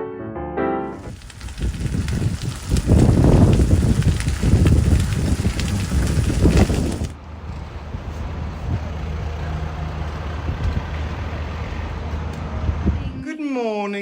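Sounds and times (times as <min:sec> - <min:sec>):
rough gusty noise: 0:01.0 - 0:09.0.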